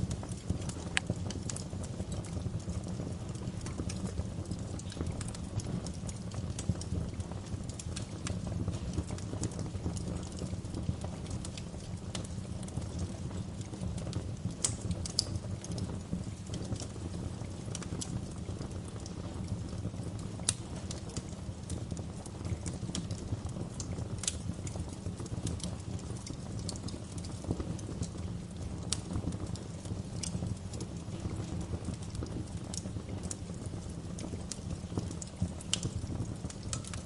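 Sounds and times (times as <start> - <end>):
wood fire crackling: 0.0 - 37.0.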